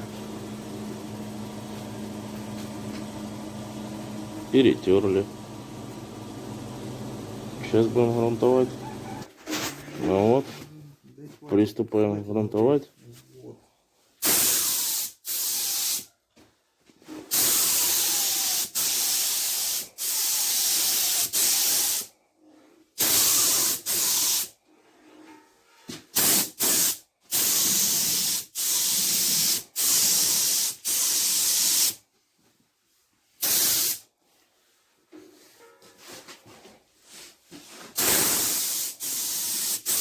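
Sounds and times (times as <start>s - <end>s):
spray can hissing: 14.2s - 16.1s, 17.3s - 22.1s, 23.0s - 24.5s, 26.2s - 32.0s, 33.4s - 34.0s, 38.0s - 40.0s.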